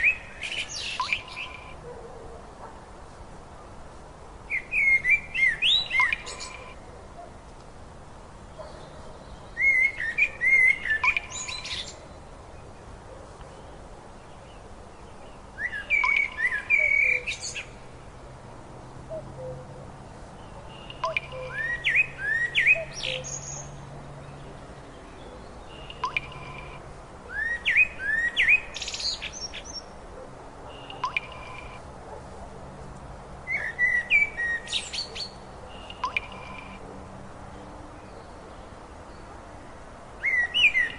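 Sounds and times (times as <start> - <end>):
songbird chirping: 0.0 - 2.3, 4.4 - 18.3, 19.1 - 30.0, 30.7 - 40.9.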